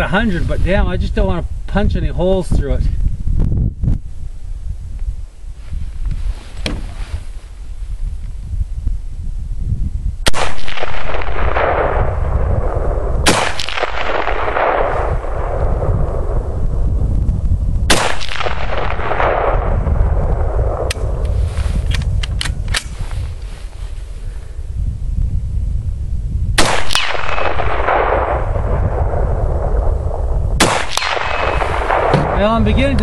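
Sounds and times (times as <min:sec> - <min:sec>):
wind buffeting microphone: 0:00.0 - 0:33.0
rifle shots with rolling echo: 0:10.3 - 0:16.6, 0:17.9 - 0:21.2, 0:26.6 - 0:32.8.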